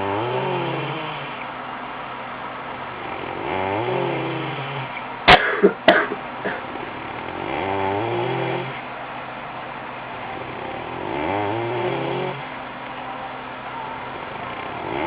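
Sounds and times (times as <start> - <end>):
person snoring: 3.1 - 4.9, 6.4 - 8.8
sharp cough-like sounds: 5.3 - 6.8.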